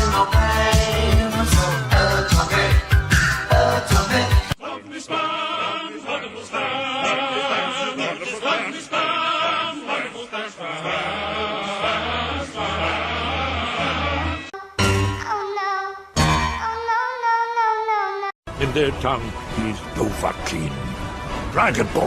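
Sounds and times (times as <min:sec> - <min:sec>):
operatic choir-like singing: 0:00.0 - 0:14.6.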